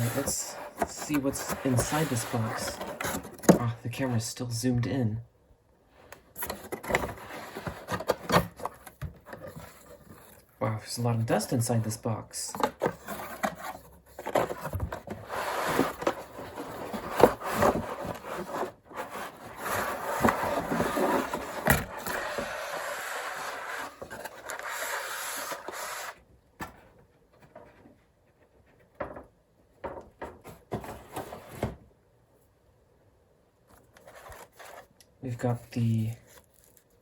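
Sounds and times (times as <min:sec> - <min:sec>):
cardboard scraping and rubbing: 0:00.0 - 0:03.7, 0:06.4 - 0:10.4, 0:12.7 - 0:26.2, 0:34.0 - 0:34.9.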